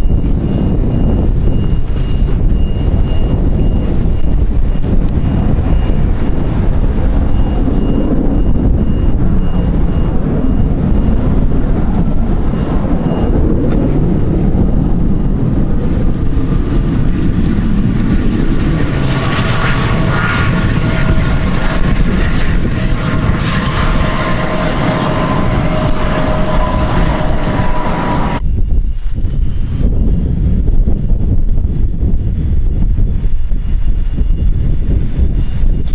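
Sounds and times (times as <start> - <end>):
airliner engines whining: 0.0 - 28.5
wind buffeting microphone: 0.0 - 35.9.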